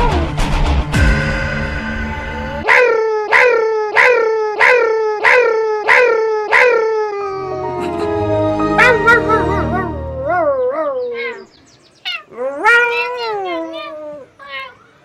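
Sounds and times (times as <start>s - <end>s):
steady held tones: 0.9s - 2.7s.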